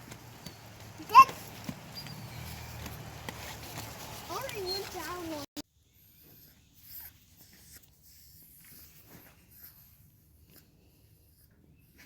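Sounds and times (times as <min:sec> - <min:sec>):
faint soft rustles and taps: 0:00.0 - 0:05.5.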